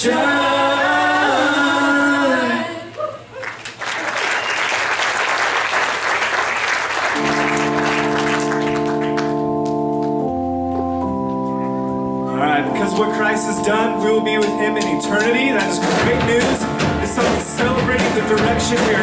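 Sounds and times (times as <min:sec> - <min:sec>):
congregation applauding: 0:03.4 - 0:10.2
organ chord sustaining: 0:07.1 - 0:19.0.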